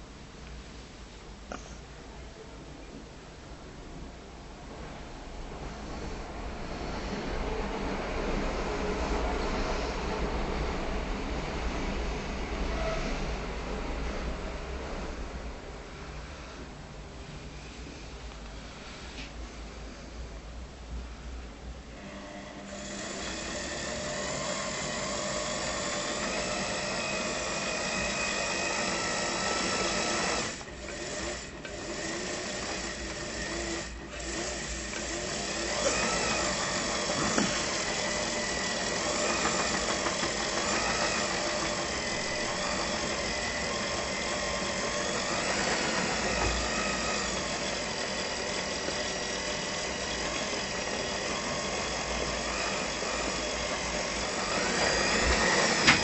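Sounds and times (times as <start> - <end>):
small electric motor running: 22.1 - 56.0.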